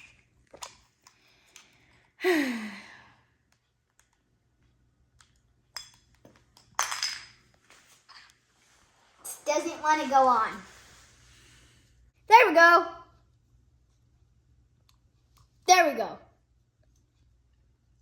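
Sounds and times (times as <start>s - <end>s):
person sighing: 2.2s - 3.1s.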